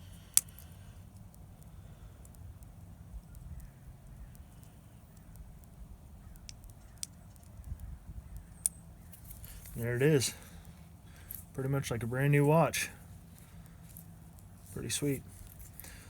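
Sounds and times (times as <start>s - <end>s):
faint low rumble: 0.0s - 16.0s
small sharp plastic clicks: 0.2s - 9.8s.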